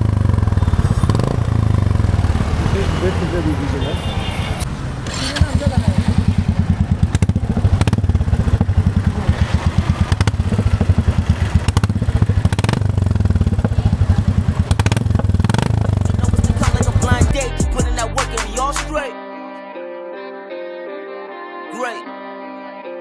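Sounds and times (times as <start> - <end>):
motorcycle engine idling: 0.0 - 17.5.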